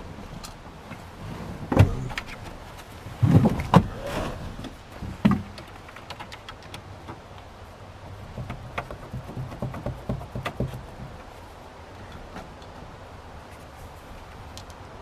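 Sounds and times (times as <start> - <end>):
plastic trim knocks and clunks: 0.9 - 7.3, 8.2 - 11.2.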